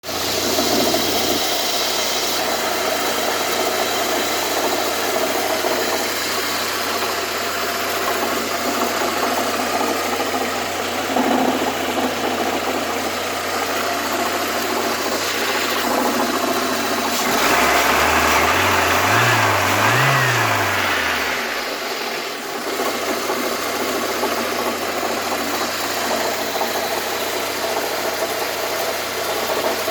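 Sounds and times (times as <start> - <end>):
car engine idling with knock: 0.1 - 29.9
engine revving: 15.0 - 22.8.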